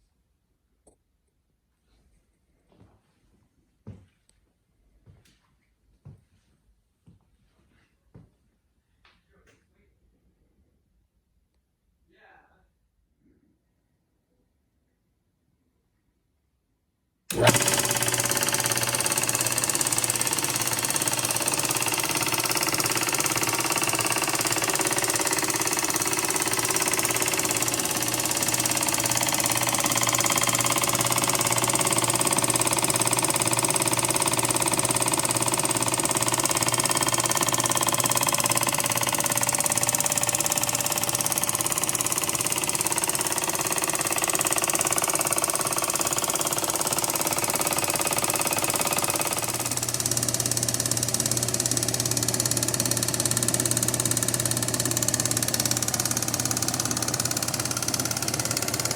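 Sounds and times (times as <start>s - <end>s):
scroll saw running: 17.3s - 58.9s.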